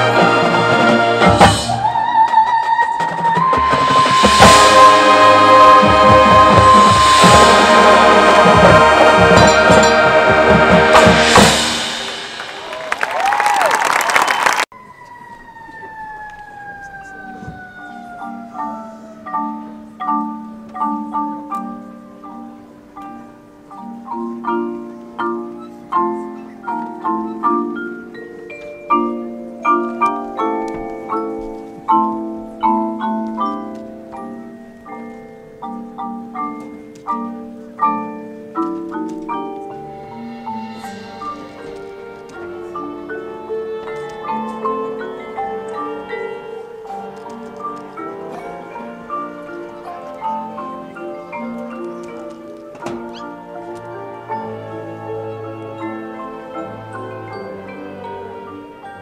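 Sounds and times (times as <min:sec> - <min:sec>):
marimbas playing: 0:00.0 - 0:13.4, 0:17.0 - 0:59.0
marching band brass and drums: 0:00.0 - 0:14.6, 0:39.2 - 0:59.0
crowd applause and cheering: 0:03.6 - 0:14.8.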